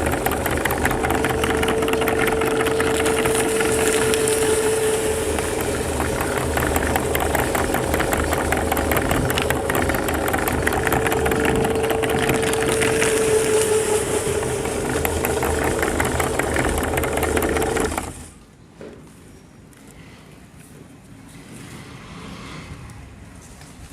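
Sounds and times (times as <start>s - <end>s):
electric grinder crunching biscuits: 0.0s - 18.4s.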